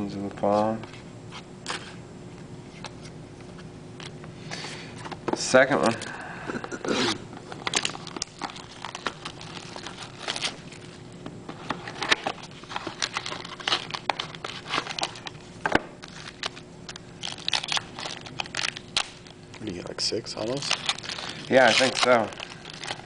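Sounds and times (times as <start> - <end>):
card pack wrapper crinkling: 7.5 - 15.4, 16.0 - 23.0.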